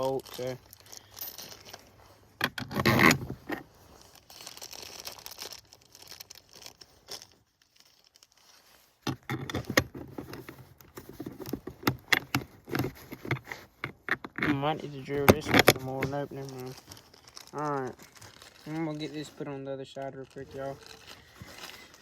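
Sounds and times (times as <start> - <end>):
rustle: 0.0 - 13.8, 14.5 - 22.0.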